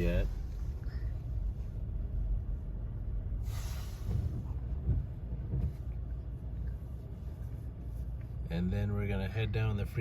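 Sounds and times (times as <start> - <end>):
engine and road noise rumble: 0.0 - 10.0
short hiss: 3.4 - 4.4.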